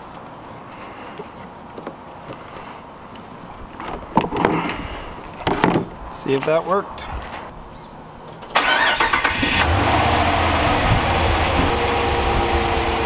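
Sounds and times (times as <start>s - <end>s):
engine starter cranking: 8.5s - 10.5s
engine idling: 8.6s - 13.0s.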